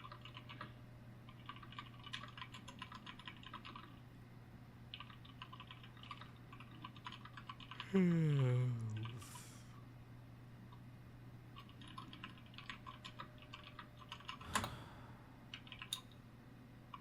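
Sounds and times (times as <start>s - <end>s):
low hum: 7.8s - 11.4s, 13.2s - 17.0s.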